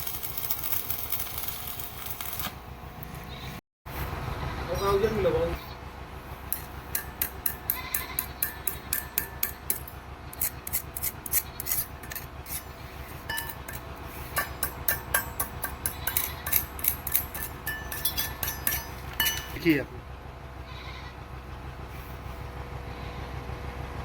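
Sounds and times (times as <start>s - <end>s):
welding arc crackling: 0.0s - 2.7s
steady low hum: 2.3s - 24.0s.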